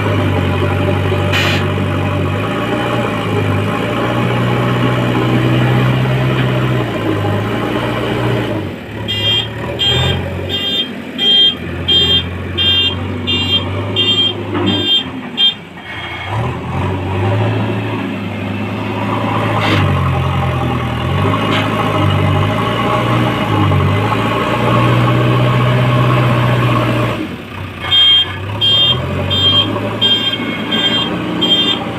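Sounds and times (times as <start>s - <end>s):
diesel engine running: 0.0s - 31.9s
reversing alarm beeping: 9.1s - 15.6s, 27.9s - 31.9s.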